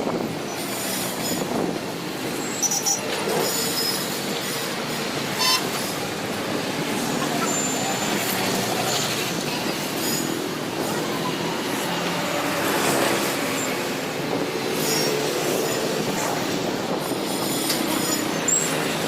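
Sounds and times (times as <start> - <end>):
train wheels on rails: 0.0 - 19.0
high-pitched wheel squeals: 2.4 - 4.3, 5.3 - 6.0, 7.2 - 9.3, 17.4 - 19.0.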